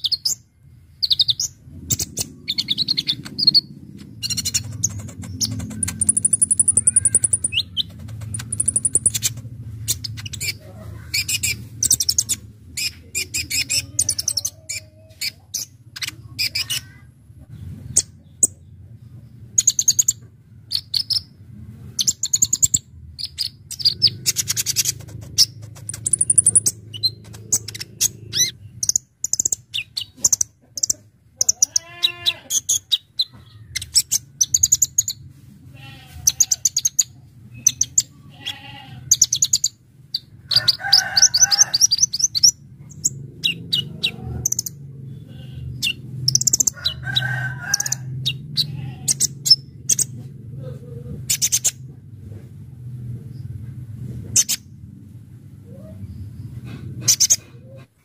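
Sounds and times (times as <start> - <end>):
bird chirping and trilling: 0.0 - 17.0, 19.6 - 21.4, 22.0 - 35.2, 35.9 - 50.2
steady low hum: 0.0 - 58.0.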